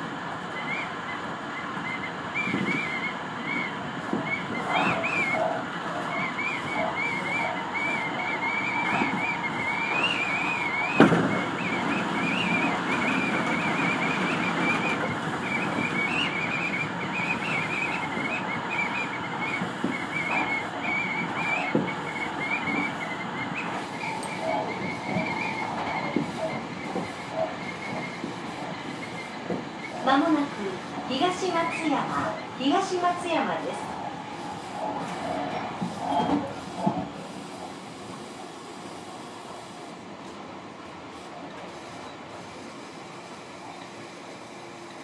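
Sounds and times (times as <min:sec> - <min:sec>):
train running rumble: 0:00.0 - 0:45.0
high whistling tone: 0:06.1 - 0:28.3.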